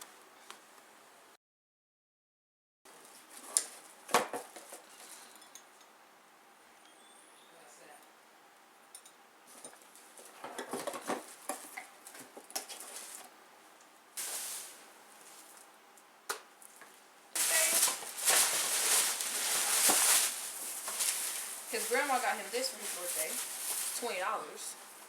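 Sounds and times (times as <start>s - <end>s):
bag rustling: 14.2s - 15.5s, 17.4s - 25.0s
packaging crinkling: 17.4s - 24.2s.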